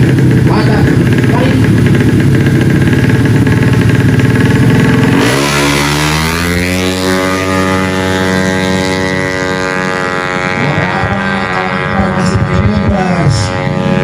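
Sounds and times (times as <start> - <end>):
scooter engine revving high: 0.0 - 14.0
scooter engines rumbling: 0.0 - 14.0.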